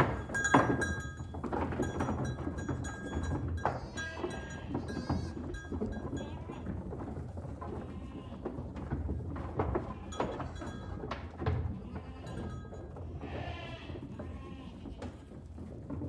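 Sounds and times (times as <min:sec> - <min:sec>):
scattered knocks: 0:00.0 - 0:03.8
farm animals bleating: 0:03.7 - 0:05.5, 0:13.2 - 0:15.1.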